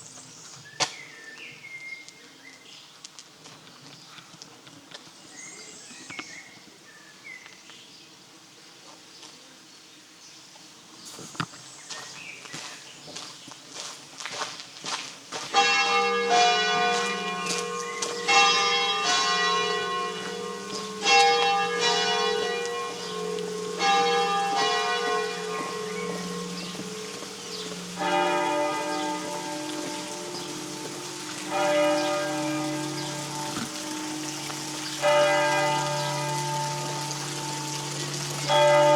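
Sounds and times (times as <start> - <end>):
faint footsteps: 0.1 - 5.3, 10.6 - 38.8
church bells ringing: 15.4 - 38.9.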